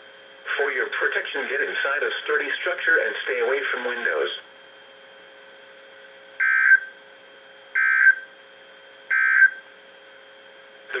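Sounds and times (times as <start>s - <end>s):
faint radio hum: 0.4s - 4.5s.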